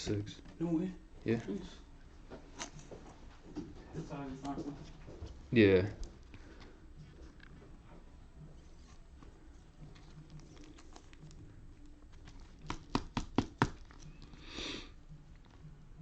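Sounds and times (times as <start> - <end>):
trading cards handling noise: 2.3 - 5.4, 8.4 - 14.6.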